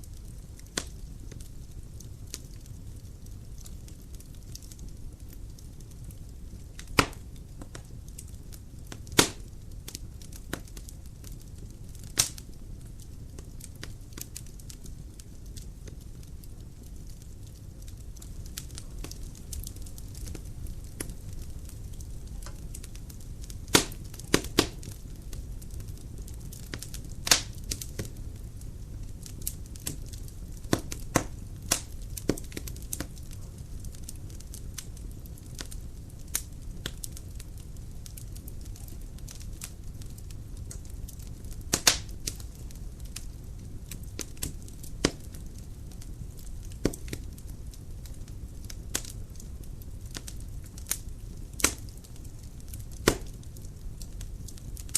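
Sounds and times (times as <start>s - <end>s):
firewood crackling and popping: 0.0s - 54.9s
fire rushing: 3.4s - 53.8s.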